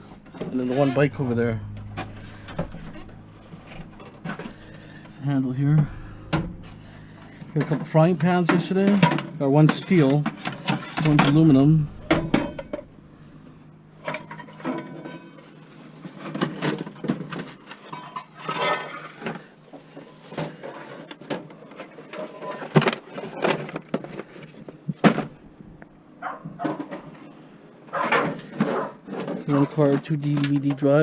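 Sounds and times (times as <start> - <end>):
loud bangs: 11.0 - 14.0
scrap items clanking and scraping: 14.0 - 25.3.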